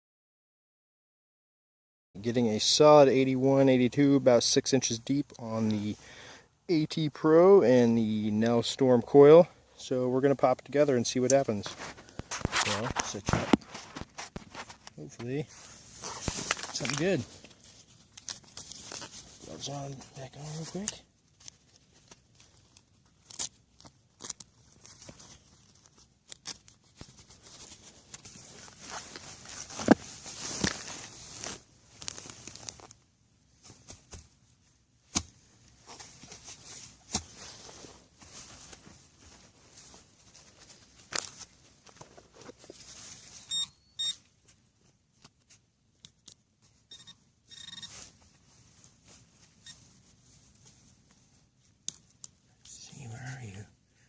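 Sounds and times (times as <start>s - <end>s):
work gloves rustling: 8.3s - 53.6s
soil being dug and scraped: 11.2s - 24.9s
metal detector beeps: 43.4s - 44.2s, 46.9s - 48.0s.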